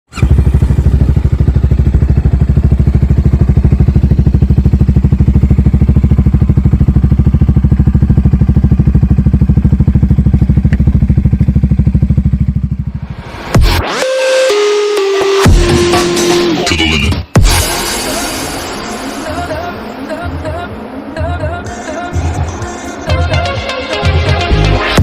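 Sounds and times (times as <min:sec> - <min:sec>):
motorcycle engine idling: 0:00.1 - 0:13.0, 0:18.5 - 0:23.6.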